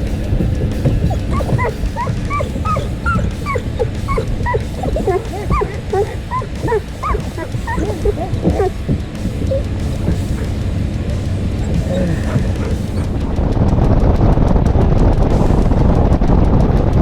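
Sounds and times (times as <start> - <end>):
dog whining and whimpering: 0.6 - 13.2.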